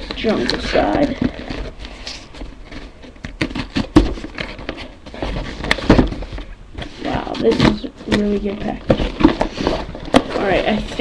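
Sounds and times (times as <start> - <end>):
packaging rustling and clicking: 0.0 - 11.0.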